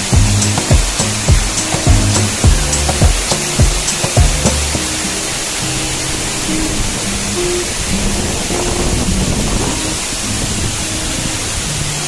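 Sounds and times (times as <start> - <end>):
background music held notes: 0.0 - 12.0.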